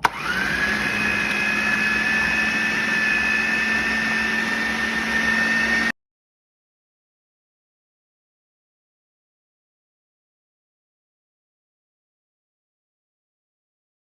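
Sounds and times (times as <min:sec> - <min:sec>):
blender motor whining: 0:00.0 - 0:05.9.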